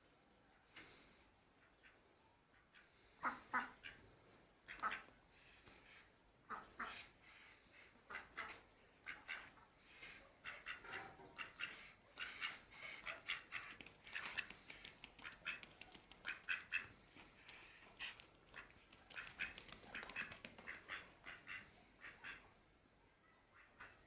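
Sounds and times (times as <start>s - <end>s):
ducks calling: 6.5s - 22.5s.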